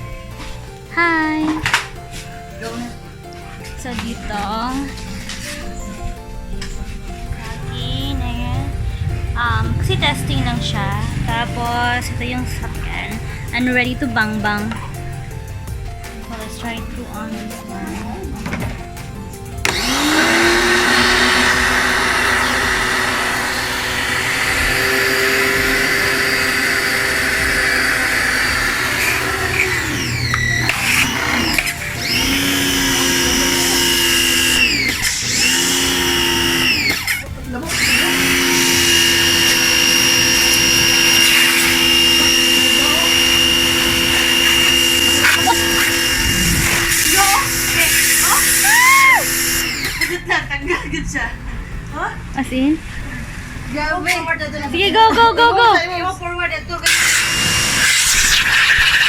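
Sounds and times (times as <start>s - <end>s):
pressure washer motor whine: 17.5s - 50.2s, 56.8s - 59.0s
pressure washer hiss: 56.9s - 59.0s.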